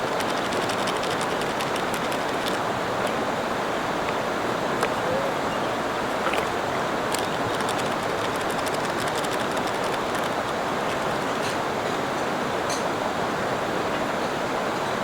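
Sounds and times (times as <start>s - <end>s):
river water rushing: 0.0s - 15.0s
faint clicks: 6.2s - 11.1s.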